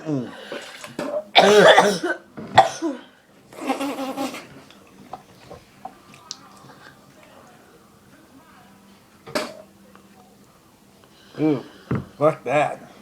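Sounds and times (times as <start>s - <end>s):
man coughing: 1.4s - 3.0s.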